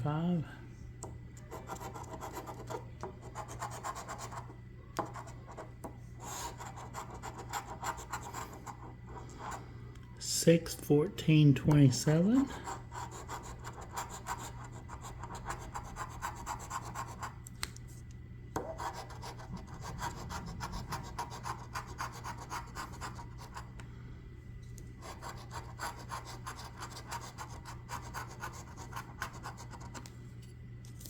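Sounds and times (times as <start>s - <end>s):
coin scratching lottery ticket: 1.4s - 8.9s, 12.4s - 17.4s, 18.7s - 23.7s, 25.0s - 30.0s.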